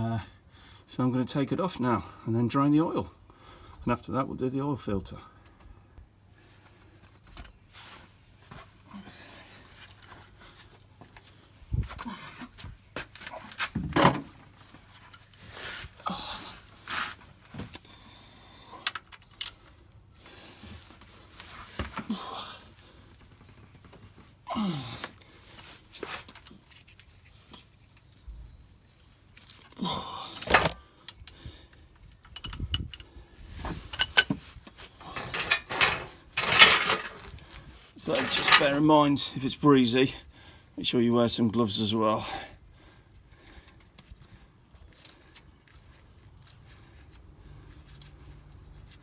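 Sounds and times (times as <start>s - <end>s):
metal tools clinking and scraping: 30.4s - 31.4s, 32.3s - 33.1s, 33.8s - 34.4s, 35.0s - 38.9s.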